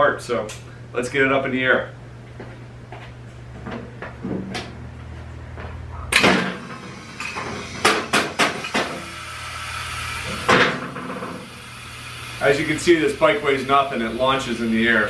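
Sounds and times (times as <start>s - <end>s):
loud clunk: 6.1s - 9.1s, 10.3s - 11.4s.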